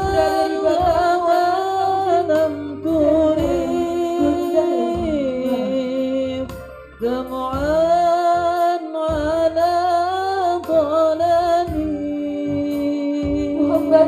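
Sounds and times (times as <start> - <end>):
man singing solo: 0.0 - 6.6.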